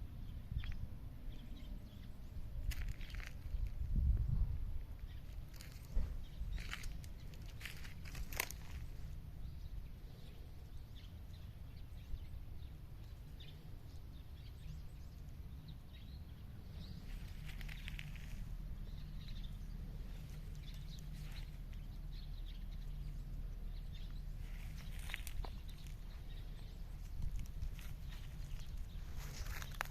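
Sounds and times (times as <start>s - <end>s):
faint crunches and rustles: 2.6s - 4.0s, 5.0s - 9.2s, 17.0s - 22.0s, 24.0s - 29.9s.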